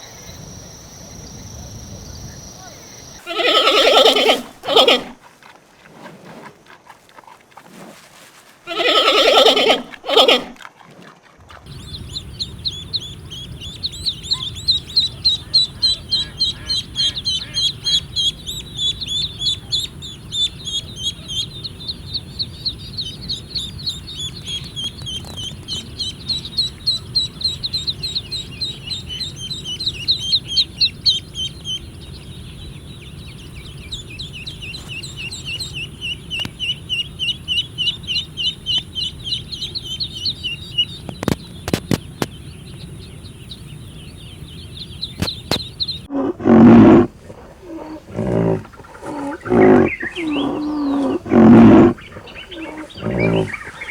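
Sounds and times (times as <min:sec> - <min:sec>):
chickens calling: 0:01.9 - 0:05.2, 0:08.7 - 0:10.6, 0:11.5 - 0:53.9.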